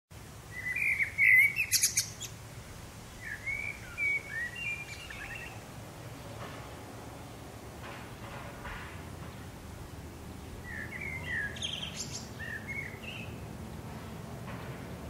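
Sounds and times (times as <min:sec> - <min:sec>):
distant road traffic rumble: 0:00.2 - 0:15.0
songbirds chirping and singing: 0:00.5 - 0:02.4, 0:03.1 - 0:06.2, 0:10.4 - 0:13.9.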